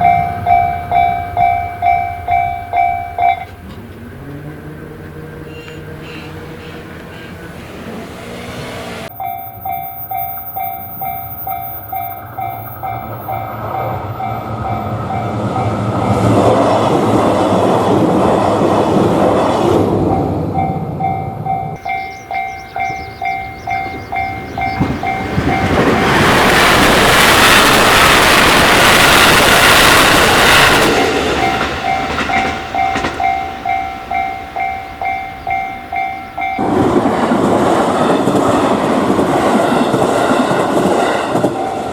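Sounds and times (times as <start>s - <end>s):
level crossing bell ringing: 0.0s - 3.6s, 9.1s - 16.2s, 20.2s - 26.4s, 30.3s - 36.6s
passing train rumble: 0.0s - 41.9s.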